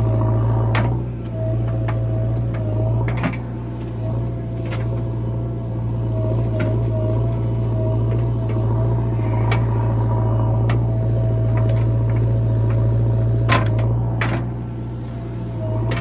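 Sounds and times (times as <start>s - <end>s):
diesel engine humming: 0.0s - 16.0s
thin steady whine: 0.0s - 16.0s.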